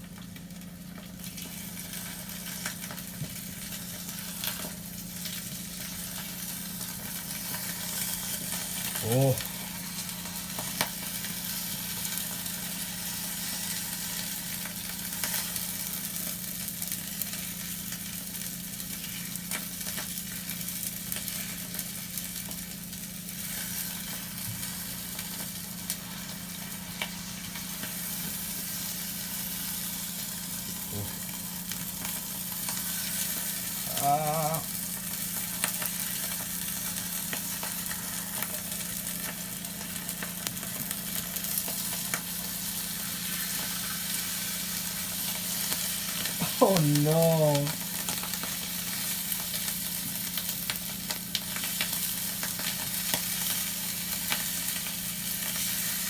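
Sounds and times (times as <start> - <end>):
food sizzling in a frying pan: 0.0 - 56.0
wavering voice: 33.8 - 34.7, 46.4 - 47.8.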